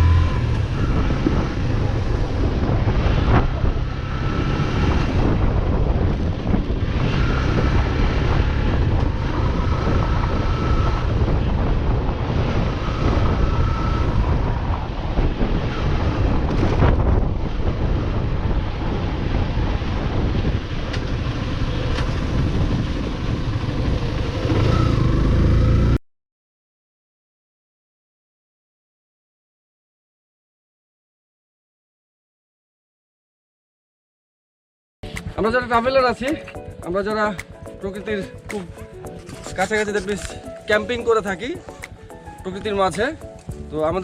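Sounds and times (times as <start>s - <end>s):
wind buffeting microphone: 0.0s - 25.6s
motorcycle engine running: 0.0s - 26.0s.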